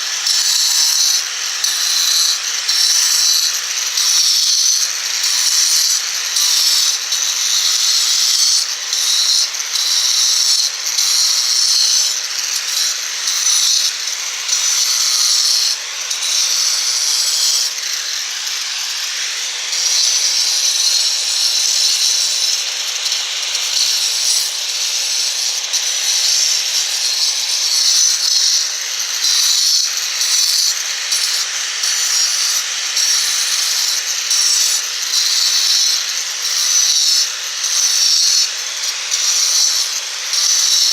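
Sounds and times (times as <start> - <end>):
angle grinder grinding stone: 0.0 - 40.9.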